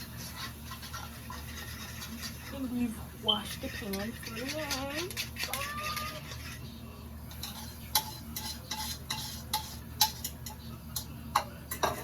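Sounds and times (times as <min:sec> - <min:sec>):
metal utensil clinking on dish: 0:03.3 - 0:06.6, 0:07.3 - 0:12.0.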